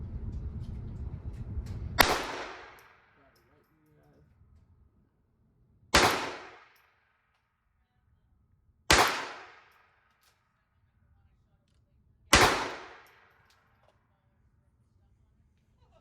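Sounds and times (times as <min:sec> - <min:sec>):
pistol shots: 0:02.0 - 0:03.2, 0:06.0 - 0:06.9, 0:08.9 - 0:09.8, 0:12.3 - 0:13.4.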